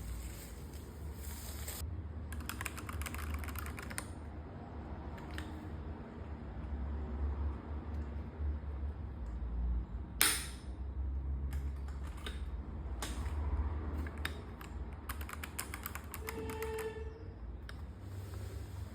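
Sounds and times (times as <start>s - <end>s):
mechanical keyboard clacks: 2.3s - 4.2s, 14.0s - 16.9s.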